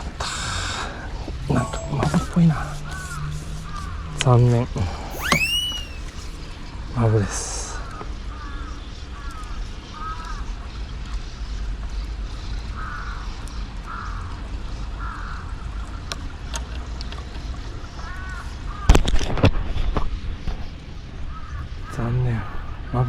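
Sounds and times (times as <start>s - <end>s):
crows cawing: 15.0s - 15.4s.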